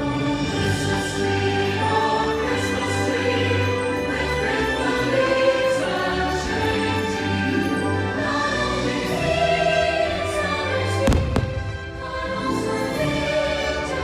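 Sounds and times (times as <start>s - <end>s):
choir singing over orchestra: 0.0s - 14.0s
fireworks bursting: 11.0s - 12.0s.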